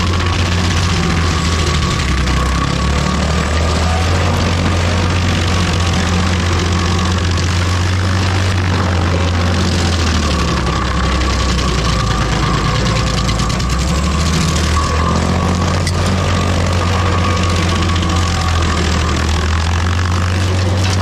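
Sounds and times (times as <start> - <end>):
stump grinder engine grinding: 0.0 - 21.0.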